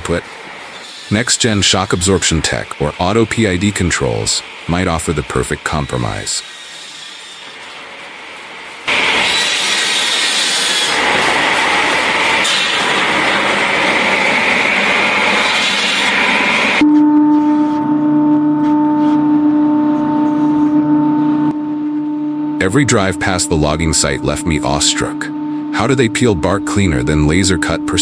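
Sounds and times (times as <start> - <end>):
steady droning hum: 0.0 - 6.6, 11.0 - 28.0.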